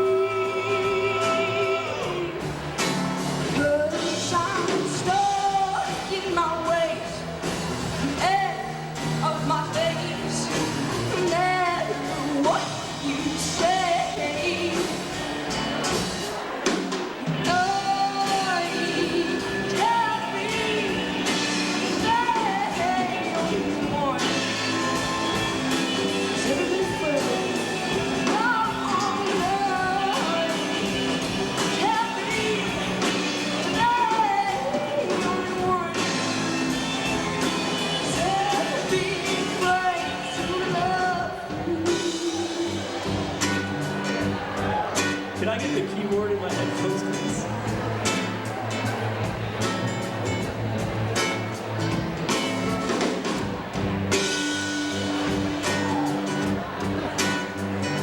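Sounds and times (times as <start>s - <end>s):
person singing long notes: 0.0s - 2.4s
live band music: 0.0s - 58.0s.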